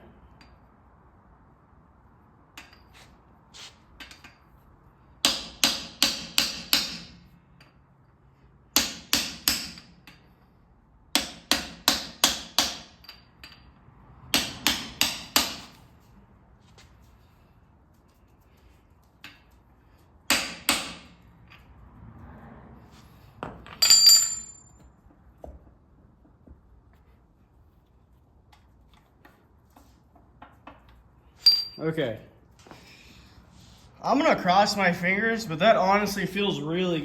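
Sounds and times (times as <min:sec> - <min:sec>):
hammer striking metal: 0:05.2 - 0:07.2, 0:08.8 - 0:09.9, 0:14.3 - 0:15.8, 0:20.3 - 0:21.1.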